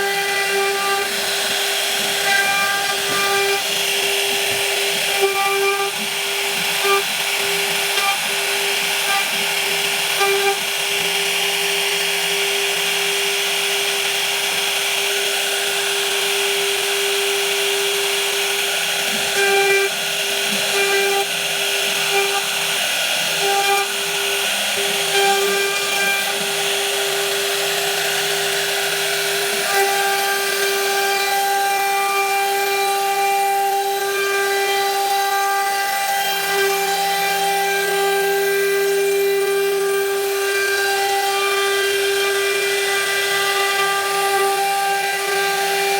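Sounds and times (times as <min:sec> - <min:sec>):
hiss of wood cutting: 0:00.0 - 0:45.9
router spindle whining: 0:00.0 - 0:45.9.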